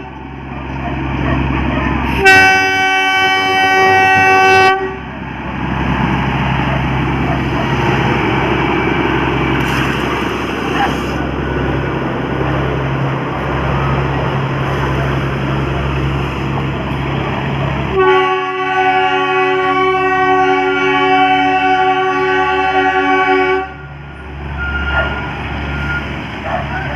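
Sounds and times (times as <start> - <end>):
train horn blast: 2.0 - 5.1, 17.9 - 23.9.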